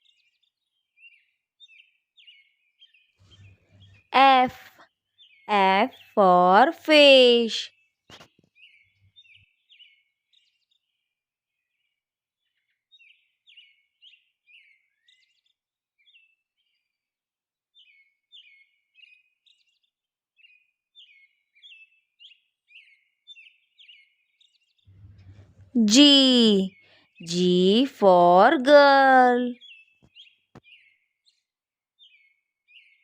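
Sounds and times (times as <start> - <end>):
faint bird chirping: 2.3 - 6.2, 24.9 - 31.0.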